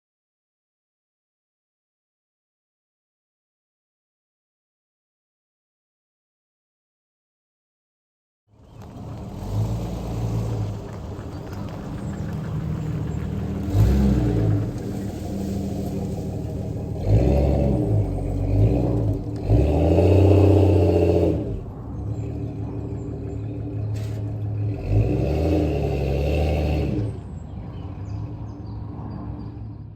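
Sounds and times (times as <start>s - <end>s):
vehicle engine revving: 8.6s - 29.5s.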